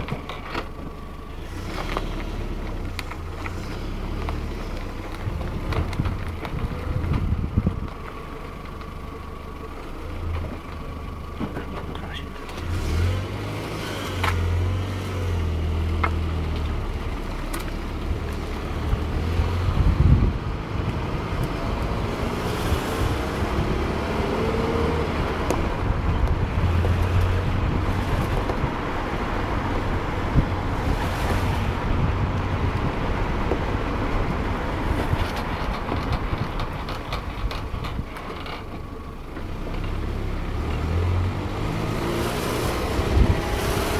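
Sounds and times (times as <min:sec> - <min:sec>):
car engine hum: 0:00.0 - 0:43.9
tyre and road noise: 0:00.0 - 0:43.9
wind on microphone: 0:05.2 - 0:08.0, 0:18.6 - 0:38.2, 0:42.0 - 0:43.9.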